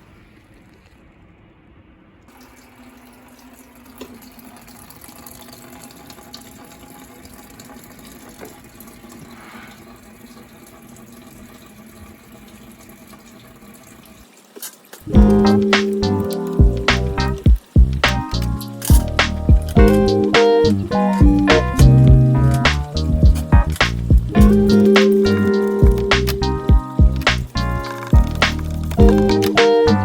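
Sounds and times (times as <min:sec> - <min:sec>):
water running: 0:02.3 - 0:30.0
loud music: 0:15.1 - 0:18.2, 0:18.9 - 0:30.0.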